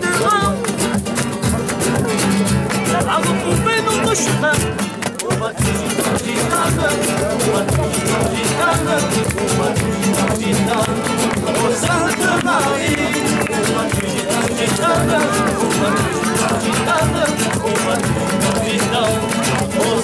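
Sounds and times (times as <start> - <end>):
flamenco guitar strumming: 0.0 - 20.0
person singing: 5.2 - 20.0.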